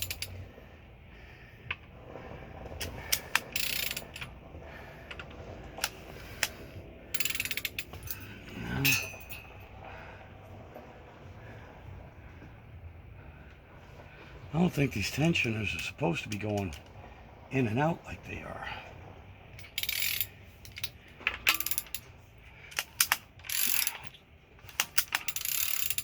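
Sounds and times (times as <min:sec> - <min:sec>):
ratchet wrench clicking: 0:00.0 - 0:00.4, 0:02.9 - 0:04.3, 0:05.8 - 0:09.5, 0:19.6 - 0:22.1, 0:22.7 - 0:26.0
sharp clicks from engine gear: 0:02.7 - 0:04.4, 0:05.0 - 0:09.5, 0:15.3 - 0:17.0, 0:19.6 - 0:26.0.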